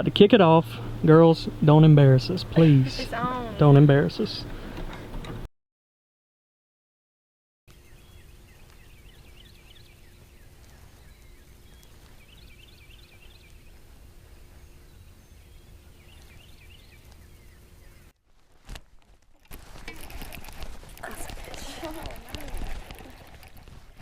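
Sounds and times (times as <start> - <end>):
outdoor background noise: 0.0 - 5.5, 7.7 - 24.0
songbird singing: 7.7 - 18.2.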